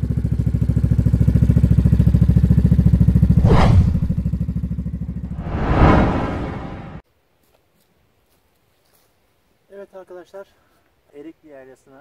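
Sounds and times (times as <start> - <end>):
rushing swells of noise: 3.4 - 4.3, 5.3 - 7.0.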